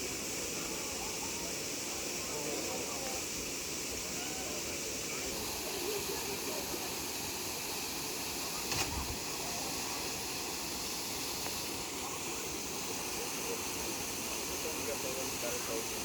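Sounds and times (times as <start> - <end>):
waterfall rushing: 3.8 - 16.0.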